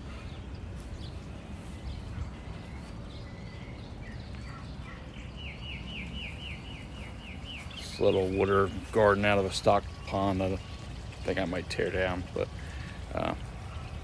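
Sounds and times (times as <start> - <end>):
songbird chirping: 0.2 - 11.0.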